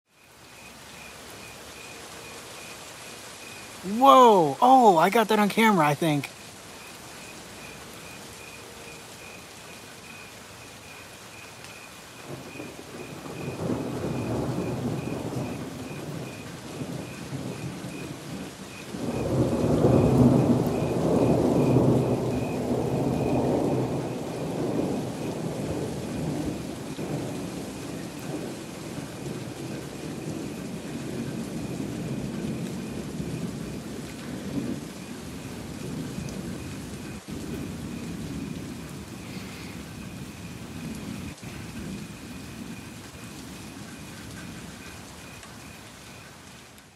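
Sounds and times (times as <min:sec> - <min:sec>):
thunder rumbling: 0:12.2 - 0:44.8
loud thunder peal: 0:19.0 - 0:27.4.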